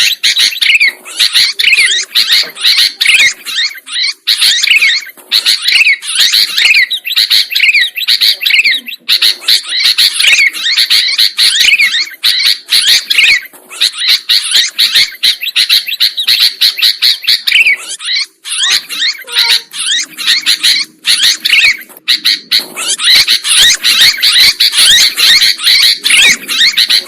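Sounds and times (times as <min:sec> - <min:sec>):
bulbul singing chattering phrases: 0:00.0 - 0:27.0.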